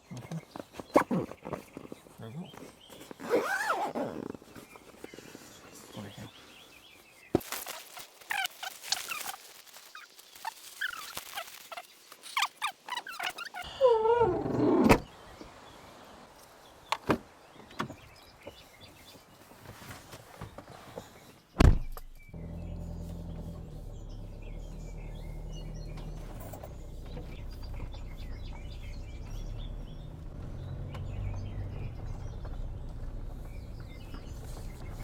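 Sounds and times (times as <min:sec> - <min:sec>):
birds chirping: 0:00.0 - 0:35.0
car door shutting: 0:14.2 - 0:15.1, 0:21.6 - 0:22.2
car engine humming: 0:22.2 - 0:35.0.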